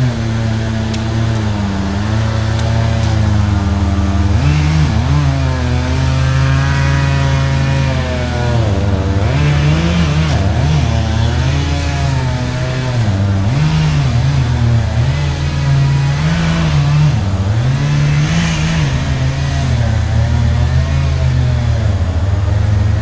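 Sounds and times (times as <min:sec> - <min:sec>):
engine revving up and down: 0:00.0 - 0:23.0.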